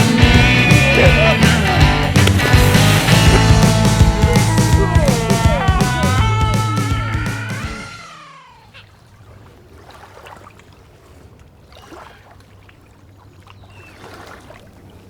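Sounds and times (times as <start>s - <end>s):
rock music: 0.0s - 8.2s.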